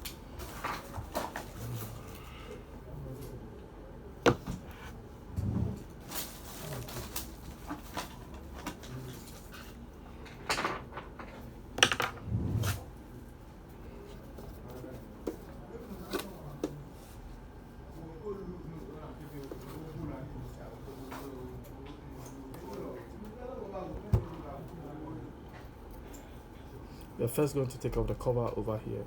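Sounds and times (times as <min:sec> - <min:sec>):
low thumps: 0:12.2 - 0:12.9.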